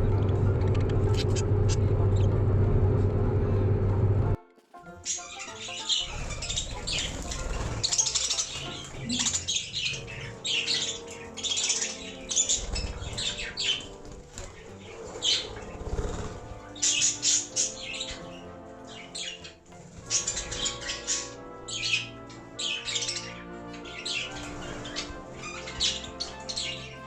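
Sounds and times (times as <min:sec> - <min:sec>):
budgies chirping: 0:00.0 - 0:02.7, 0:04.9 - 0:27.0
wings flapping: 0:04.3 - 0:27.0.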